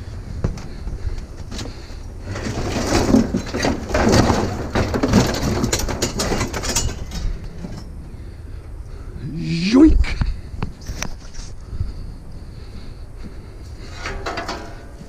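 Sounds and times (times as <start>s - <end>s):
scrap metal clattering and scraping: 1.4s - 8.0s, 13.6s - 15.0s.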